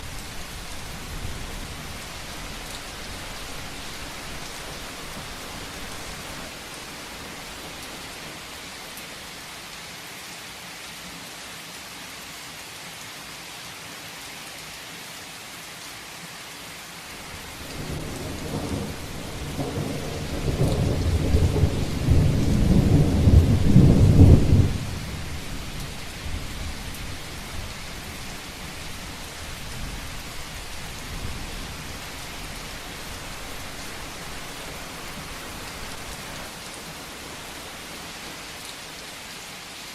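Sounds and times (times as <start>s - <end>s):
heavy rain falling: 0.0s - 13.3s, 15.1s - 39.9s
thunder rumbling: 17.2s - 37.9s.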